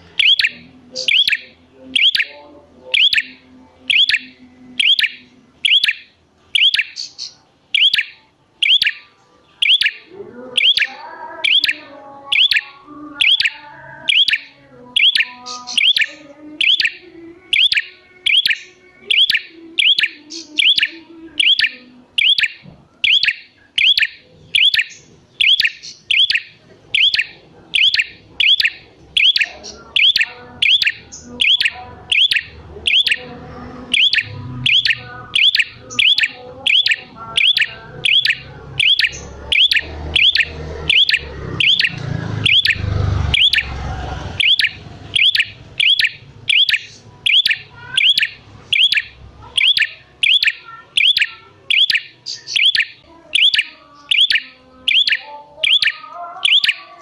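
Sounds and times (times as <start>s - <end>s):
bird chirping: 0.0s - 57.0s.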